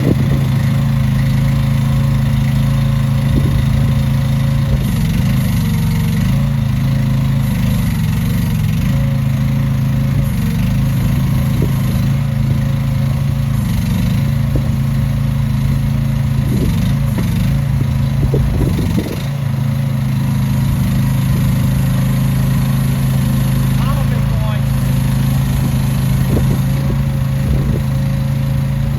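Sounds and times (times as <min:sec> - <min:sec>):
excavator engine idling: 0:00.0 - 0:28.9.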